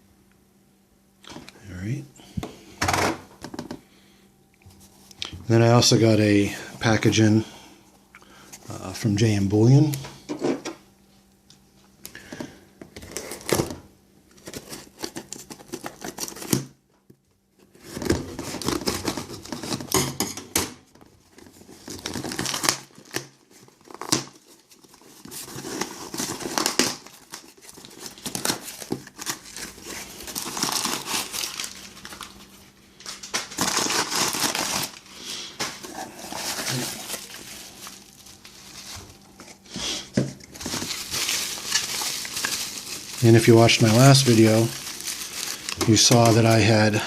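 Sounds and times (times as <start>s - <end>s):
packing material crinkling: 12.2s - 16.8s, 17.5s - 20.0s, 21.0s - 47.0s
packaging tearing: 13.0s - 13.7s, 14.3s - 16.7s, 17.7s - 20.0s, 21.3s - 47.0s.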